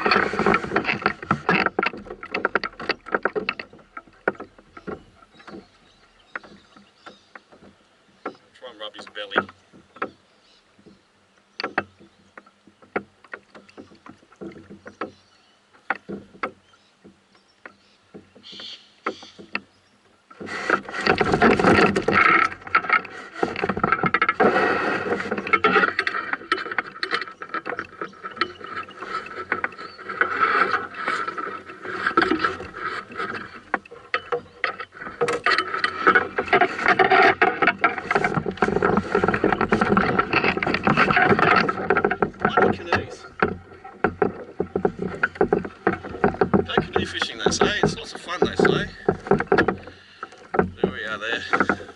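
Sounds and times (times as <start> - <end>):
loud rough rustling: 0.0 - 6.6, 20.4 - 51.9
knocks and taps in a canoe: 0.0 - 51.9.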